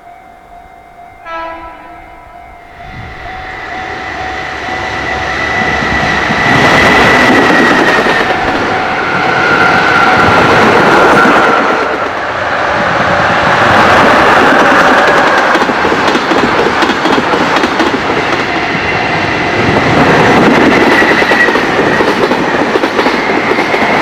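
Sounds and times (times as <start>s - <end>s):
freight train passing: 0.0s - 24.0s
train horn blast: 1.1s - 6.6s.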